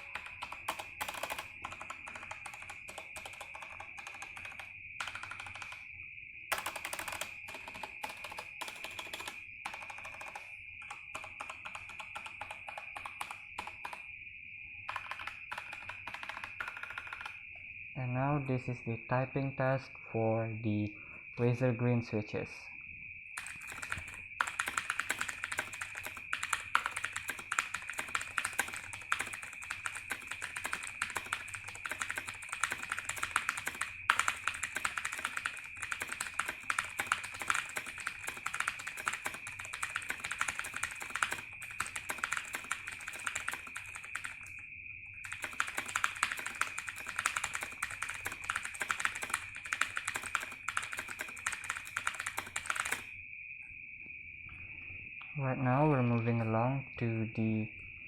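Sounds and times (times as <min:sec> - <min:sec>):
mechanical keyboard clicks: 0:00.0 - 0:05.8, 0:06.5 - 0:14.0, 0:14.9 - 0:17.4, 0:23.4 - 0:44.6, 0:45.2 - 0:53.1.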